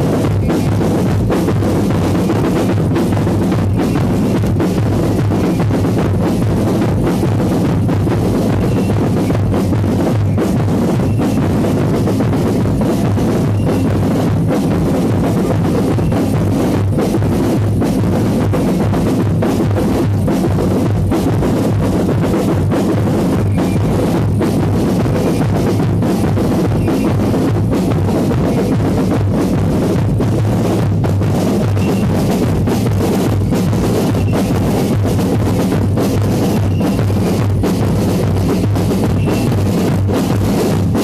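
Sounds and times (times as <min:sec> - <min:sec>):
drum-heavy music: 0:00.0 - 0:41.0.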